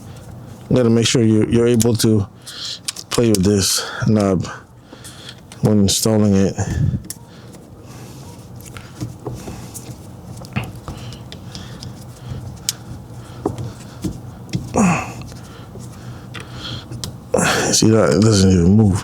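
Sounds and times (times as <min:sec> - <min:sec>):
breathy grunt: 0:14.7 - 0:15.3, 0:16.7 - 0:17.8.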